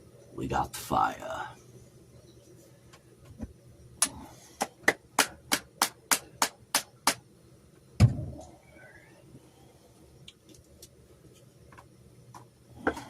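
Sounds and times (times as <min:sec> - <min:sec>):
heavy thump: 0:08.0 - 0:08.4.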